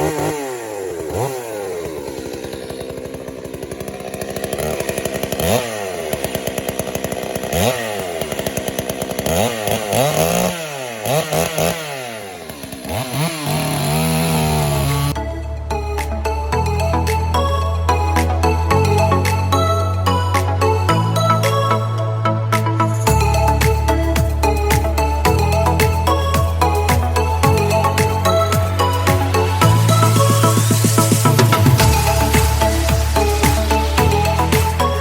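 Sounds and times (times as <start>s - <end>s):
chainsaw cutting logs: 0.0s - 35.0s
electronic music: 15.1s - 35.0s.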